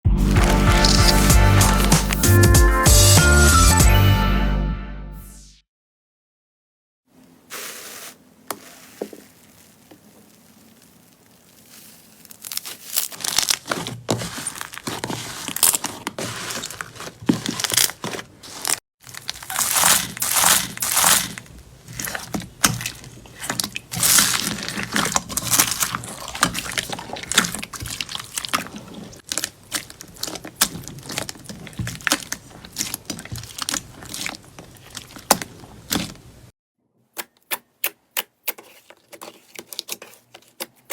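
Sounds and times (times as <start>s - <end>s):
slime squeezed crackling and popping: 0.3s - 2.3s, 9.5s - 13.9s, 17.5s - 36.1s.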